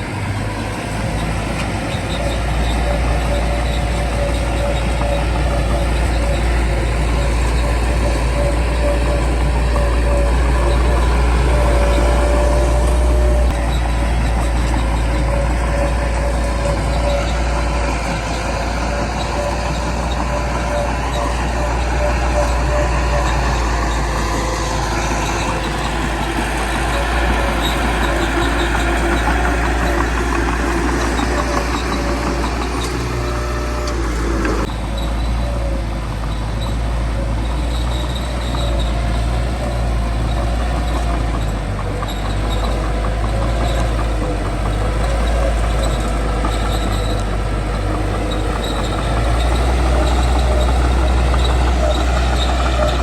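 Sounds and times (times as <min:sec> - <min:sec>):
bulldozer diesel engine rumbling: 0:00.0 - 0:53.0.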